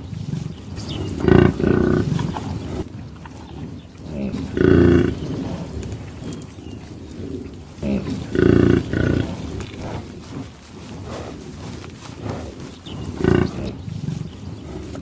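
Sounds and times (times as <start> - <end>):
low grunting: 0.0 - 15.0
cow calling: 7.4 - 9.5.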